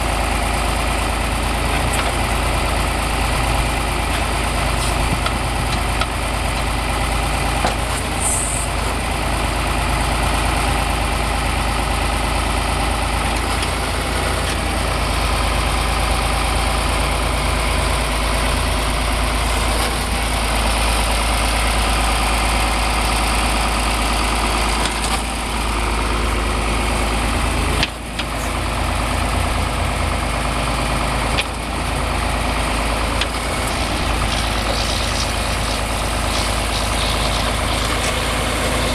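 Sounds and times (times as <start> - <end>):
tractor engine running: 0.0 - 38.9.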